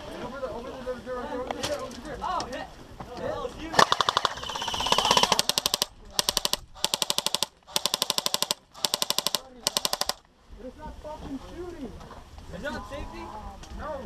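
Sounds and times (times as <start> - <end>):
airsoft gun bursts: 3.7 - 10.2.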